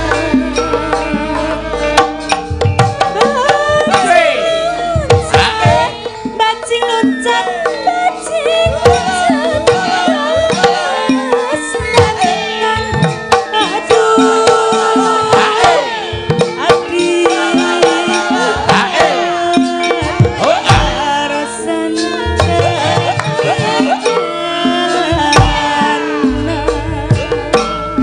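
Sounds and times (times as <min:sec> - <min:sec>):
hand drum strokes: 0:00.0 - 0:21.3
metallophone notes: 0:00.0 - 0:28.0
wavering melodic lines: 0:00.0 - 0:28.0.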